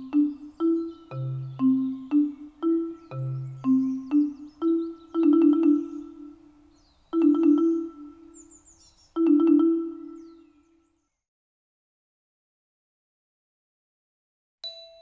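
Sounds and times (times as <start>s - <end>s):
marimba-like mallet music: 0.0s - 8.6s, 9.2s - 10.5s, 14.6s - 15.0s
faint high chirping: 0.0s - 10.9s.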